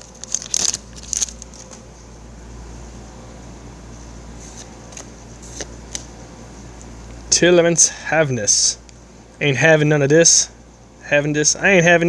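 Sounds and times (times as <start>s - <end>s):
foil wrapper crinkling: 0.0s - 1.9s
handling trading cards: 0.0s - 2.0s, 4.4s - 6.2s
steady low hum: 0.0s - 12.0s.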